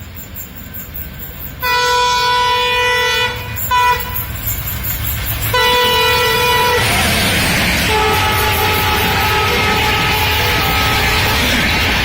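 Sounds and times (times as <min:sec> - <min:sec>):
low rumble of passing train: 0:00.0 - 0:12.0
locomotive horn blasts: 0:01.6 - 0:04.3, 0:05.5 - 0:07.1, 0:07.8 - 0:11.6.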